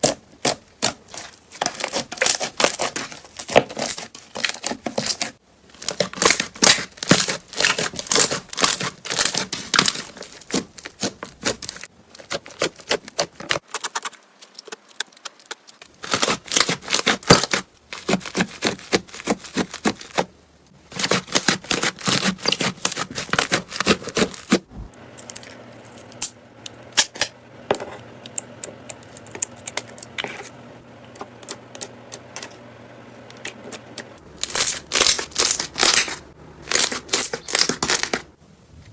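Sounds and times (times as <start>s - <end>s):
faint hum: 24.3s - 38.9s.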